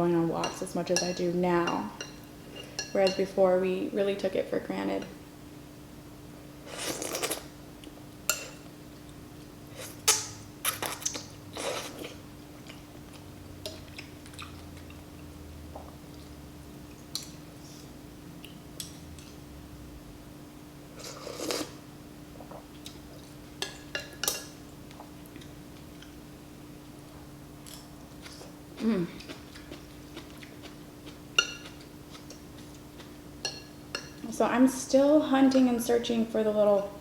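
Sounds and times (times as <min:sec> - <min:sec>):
chewing: 0:10.7 - 0:17.4, 0:27.7 - 0:33.2.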